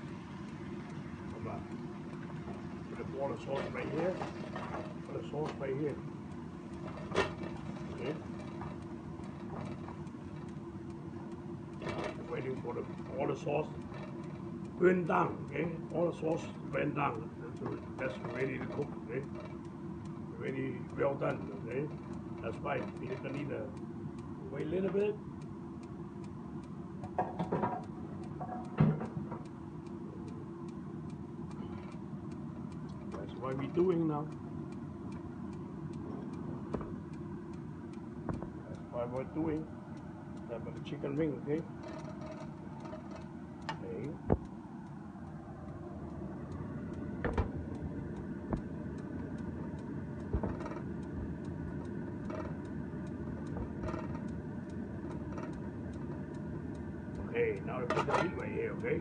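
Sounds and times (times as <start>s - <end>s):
faint regular ticking: 0.0s - 59.0s
steady low hum: 0.0s - 59.0s
sharp clicks: 27.8s - 59.0s.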